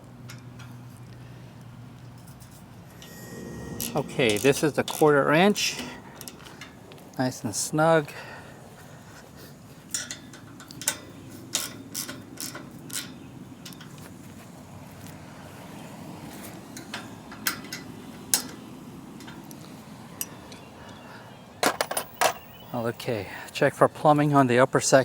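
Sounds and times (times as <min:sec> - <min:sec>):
steady low hum: 0:02.9 - 0:06.2.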